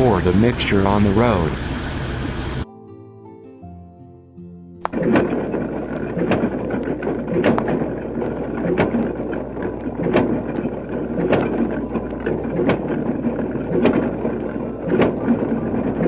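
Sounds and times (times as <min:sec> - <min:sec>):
construction vehicle engine rumble: 0:00.0 - 0:02.6, 0:05.0 - 0:16.0
engine knock: 0:00.0 - 0:02.6.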